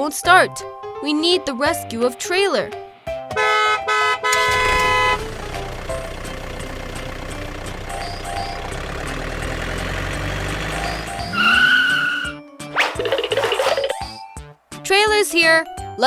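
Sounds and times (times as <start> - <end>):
truck engine running: 3.3 - 12.2.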